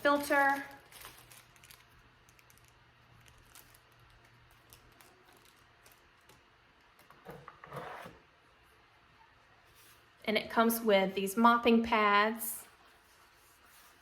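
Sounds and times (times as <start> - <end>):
packaging rustle: 0.0 - 7.1.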